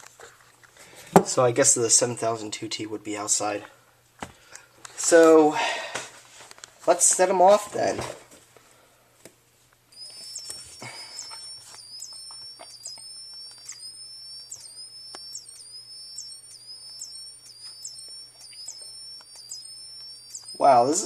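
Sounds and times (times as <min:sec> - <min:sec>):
fire alarm electronic tone: 0:09.9 - 0:21.0.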